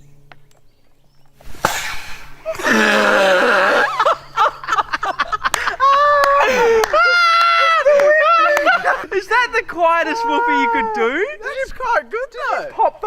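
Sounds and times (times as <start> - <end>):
whoopee cushion buzzing rasp: 0.0 - 6.8
people laughing: 2.4 - 13.0.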